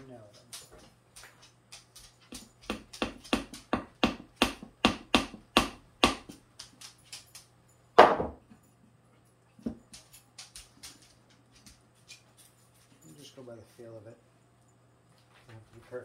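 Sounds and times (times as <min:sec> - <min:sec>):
hammer driving nails into wood: 0:02.3 - 0:06.4.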